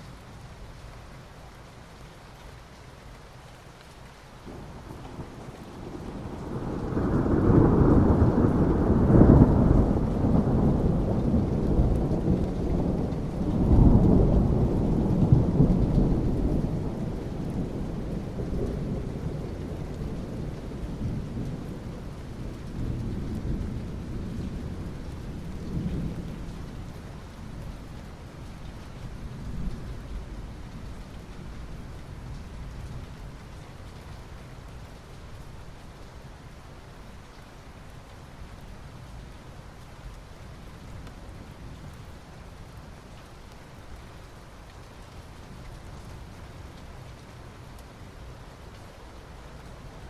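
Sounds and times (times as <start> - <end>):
rain falling on asphalt: 0.0 - 50.0
thunder rumbling: 4.5 - 32.8.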